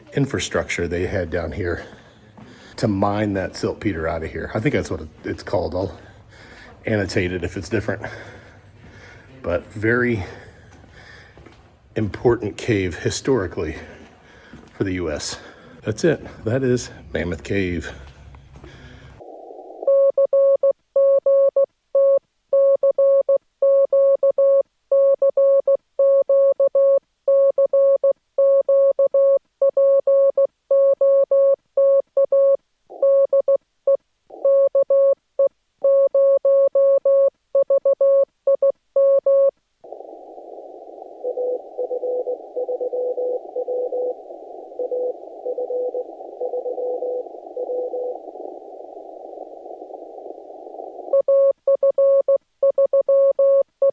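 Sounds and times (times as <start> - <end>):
morse code beeps: 19.9 - 33.6, 35.8 - 53.9
faint morse beeping: 35.9 - 53.9
radio receiver hiss: 39.8 - 51.2.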